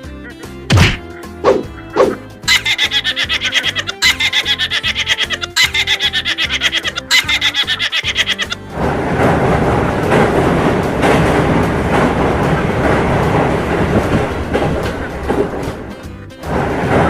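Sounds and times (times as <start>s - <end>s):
comedy thumps: 0.7s - 8.9s
pulsing giggle-like laugh effect: 1.7s - 8.7s.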